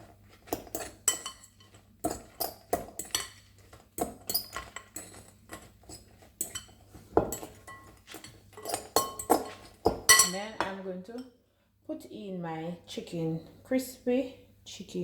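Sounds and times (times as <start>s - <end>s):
utensil clinking against bowl: 0.5s - 10.8s.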